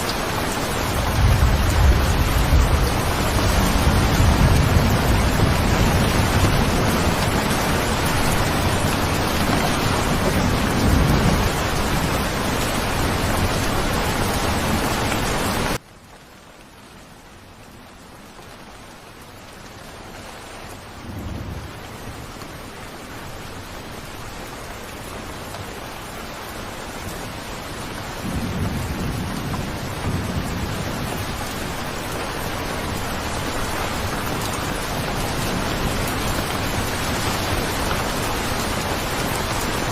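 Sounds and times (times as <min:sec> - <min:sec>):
thunder rumbling: 0:00.0 - 0:15.8, 0:28.1 - 0:39.9
heavy rain: 0:00.0 - 0:39.9.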